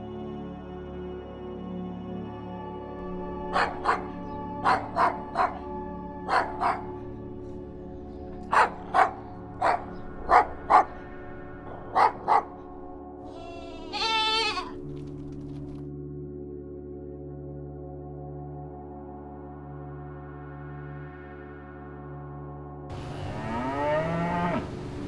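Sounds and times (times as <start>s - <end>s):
ambient music drone: 0.0s - 14.0s, 14.8s - 25.0s
dog barking: 3.4s - 7.6s, 8.2s - 12.8s
wavering bleat: 13.2s - 14.9s.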